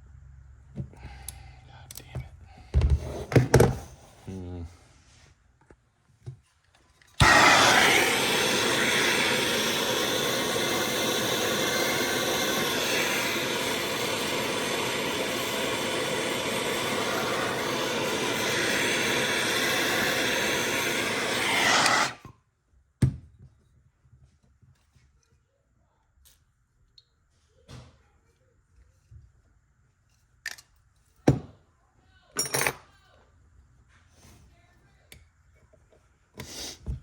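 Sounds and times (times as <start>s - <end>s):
heat gun blowing: 7.2s - 22.3s.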